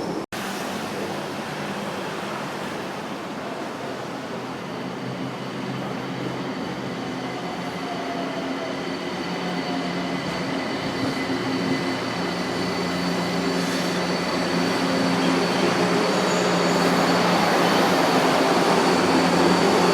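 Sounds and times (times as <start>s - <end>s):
metro train rumbling: 0.0s - 19.9s
high steady whines: 4.0s - 19.9s.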